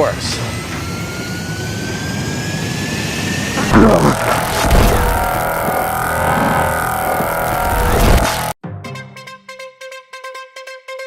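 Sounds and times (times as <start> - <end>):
electronic energy beam hum: 3.6 - 8.6.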